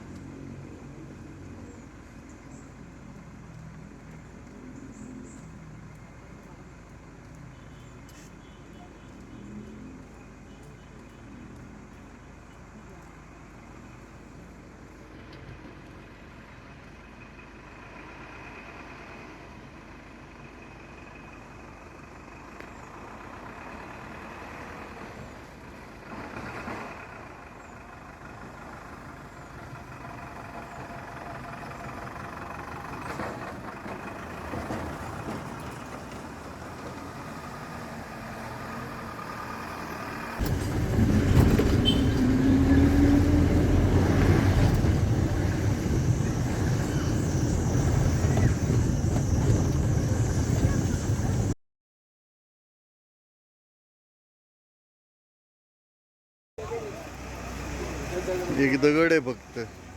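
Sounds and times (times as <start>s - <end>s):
road noise: 0.0s - 51.6s, 56.6s - 59.9s
vehicle engine revving: 29.8s - 51.6s.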